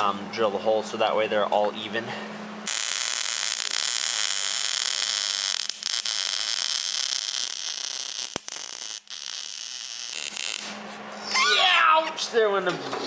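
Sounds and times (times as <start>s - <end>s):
harsh hissing metalwork: 2.6s - 11.2s.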